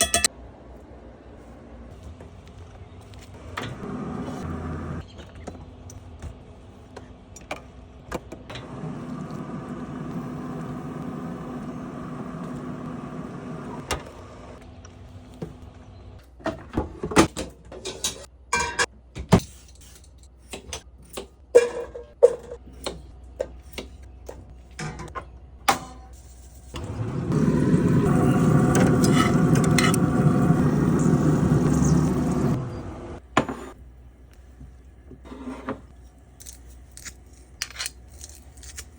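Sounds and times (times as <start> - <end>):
utensils and dishes clattering: 0.0 - 0.3, 17.2 - 18.9
motorised kitchen appliance running: 3.4 - 5.1, 8.5 - 14.8, 26.8 - 33.5.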